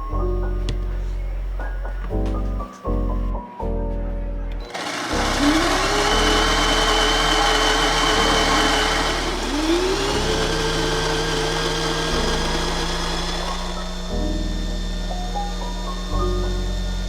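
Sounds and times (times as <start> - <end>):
coffee grinder whining: 4.6 - 17.0.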